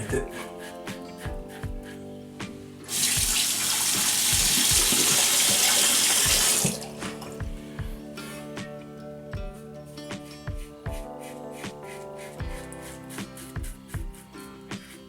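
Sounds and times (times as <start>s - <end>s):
background music: 0.0s - 15.0s
faucet running into sink: 2.9s - 7.4s.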